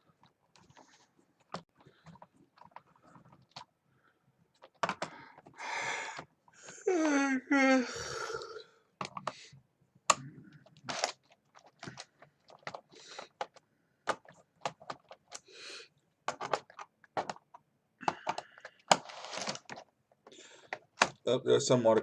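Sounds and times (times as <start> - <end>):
plastic case clicks and scrapes: 10.1 - 15.5, 16.3 - 21.2.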